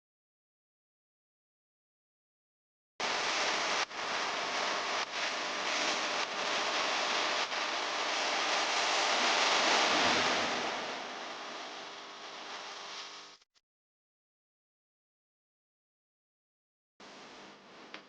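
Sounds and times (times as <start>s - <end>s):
flour frying in hot oil: 3.0s - 13.4s.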